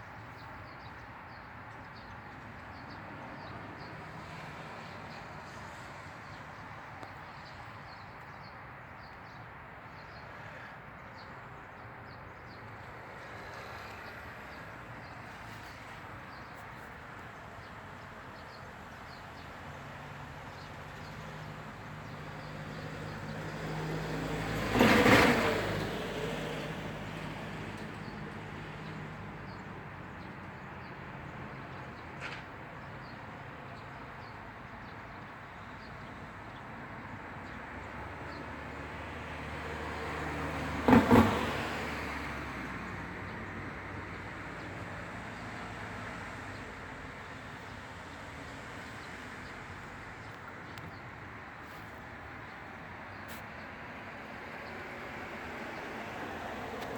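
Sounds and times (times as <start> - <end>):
vehicle passing by: 53.3 - 56.9.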